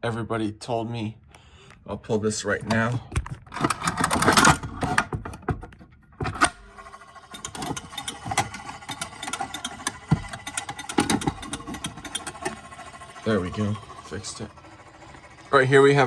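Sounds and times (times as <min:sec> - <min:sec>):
mechanical whir and fast ticking: 0:06.6 - 0:16.0
fire alarm handle clatter: 0:07.3 - 0:12.6.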